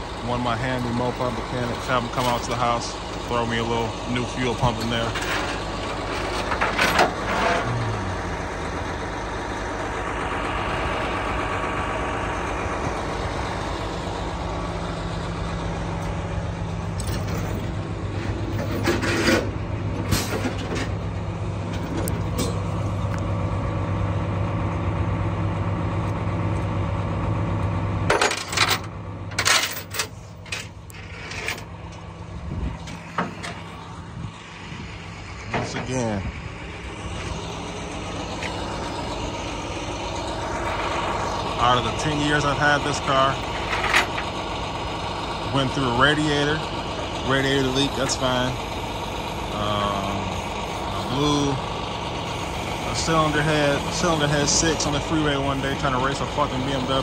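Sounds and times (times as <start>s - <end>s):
heavy truck engine running: 0.0s - 57.0s.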